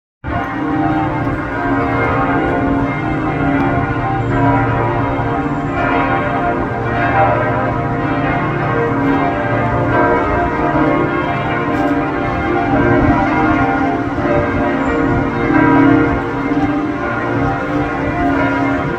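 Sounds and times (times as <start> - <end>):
church bells ringing: 0.2 - 18.9.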